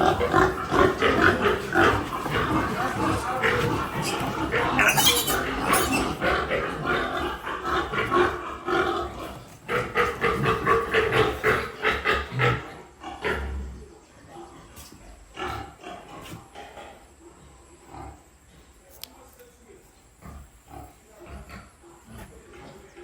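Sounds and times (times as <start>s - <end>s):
piglet squealing: 4.0s - 6.2s.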